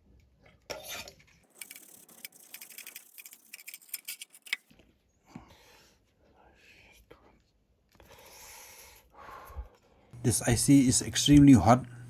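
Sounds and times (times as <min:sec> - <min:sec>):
small tools clicking and ticking: 0:01.5 - 0:04.7.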